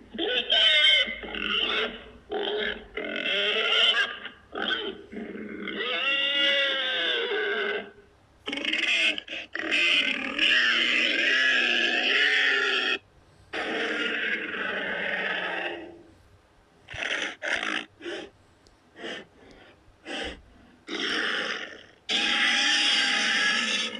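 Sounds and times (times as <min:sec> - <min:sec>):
monster roars and growls: 0:10.0 - 0:15.9, 0:20.1 - 0:23.9.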